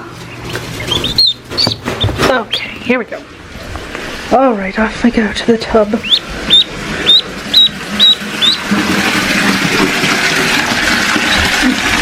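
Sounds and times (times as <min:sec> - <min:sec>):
ducklings peeping: 0:00.0 - 0:04.0, 0:05.7 - 0:09.9, 0:10.5 - 0:12.0
water running from bathtub tap: 0:06.8 - 0:12.0.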